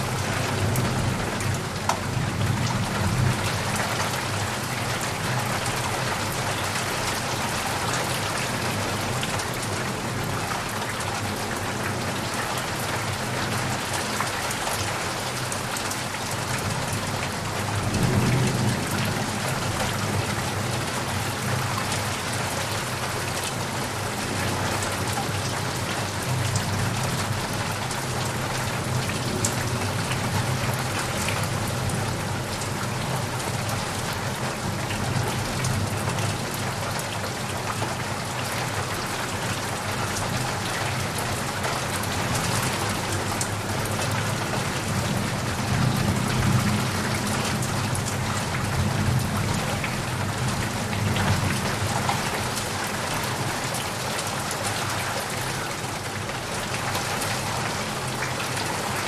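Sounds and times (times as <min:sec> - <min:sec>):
heavy rain on leaves and puddles: 0:00.0 - 0:59.0
low rumble of thunder: 0:16.8 - 0:23.0.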